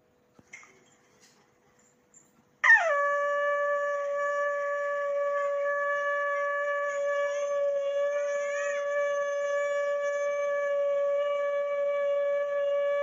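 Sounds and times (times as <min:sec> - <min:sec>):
conch shell being blown: 0:02.6 - 0:13.0.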